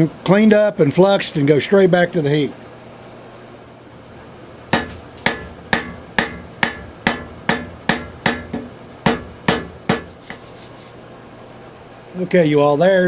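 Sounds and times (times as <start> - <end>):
hammer striking iron on anvil: 4.7 - 10.4.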